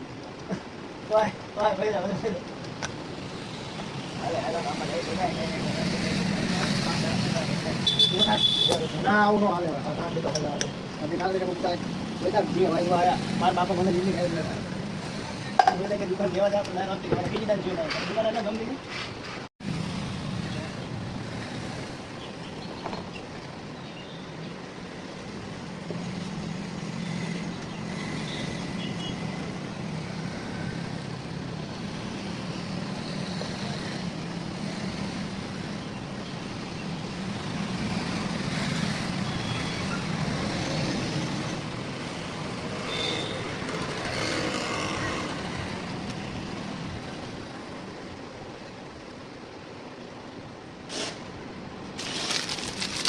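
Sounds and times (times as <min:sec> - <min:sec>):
vehicle rumble: 0:24.4 - 0:53.0.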